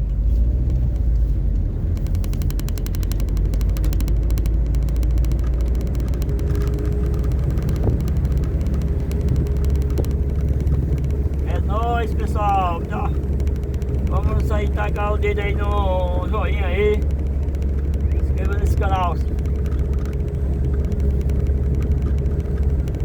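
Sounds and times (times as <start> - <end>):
car engine and road noise: 0.0 - 23.0
fast faint ticks: 0.0 - 23.0.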